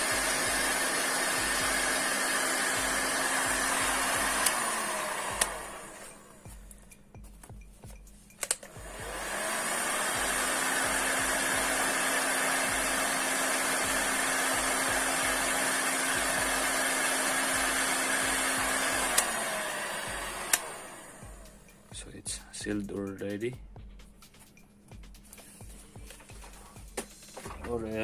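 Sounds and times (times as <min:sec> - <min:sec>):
heat gun blowing with motor hum: 0:00.0 - 0:06.7, 0:08.4 - 0:21.9
heat gun switch click: 0:04.3 - 0:05.8, 0:08.4 - 0:08.8, 0:19.0 - 0:19.4, 0:20.4 - 0:20.8.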